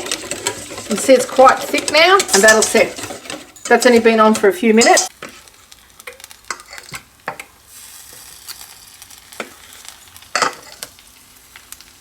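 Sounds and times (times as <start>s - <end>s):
spoon scraping and knocking in bowl: 0.0s - 5.1s
faint sizzle: 0.0s - 12.0s.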